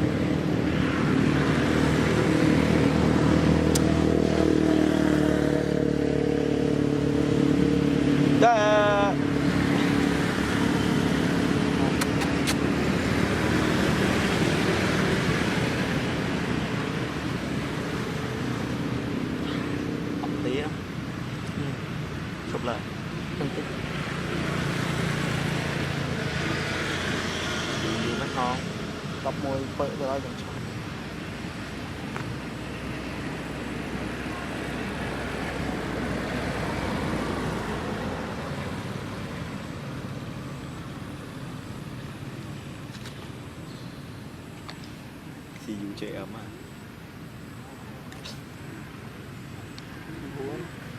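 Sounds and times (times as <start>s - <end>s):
vehicle engine and traffic noise: 0.0s - 50.9s
short clicks: 12.0s - 12.6s.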